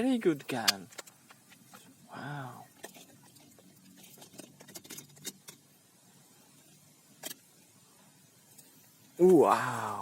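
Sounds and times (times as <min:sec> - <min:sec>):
toy guns clicking and rattling: 0:00.4 - 0:01.9, 0:02.8 - 0:05.6.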